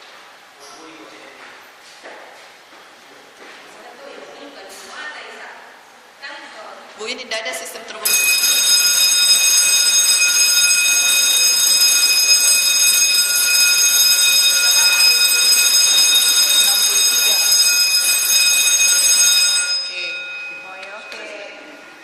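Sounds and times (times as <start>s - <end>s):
fire alarm continuous high tone: 8.0s - 22.0s.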